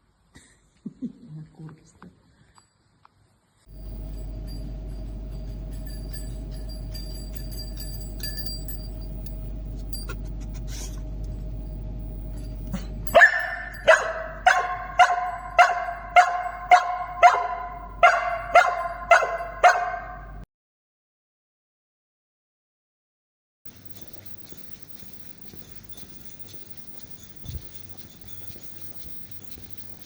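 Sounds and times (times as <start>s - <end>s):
indoor hum: 3.7s - 20.4s, 23.7s - 30.0s
dog barking: 12.7s - 20.4s.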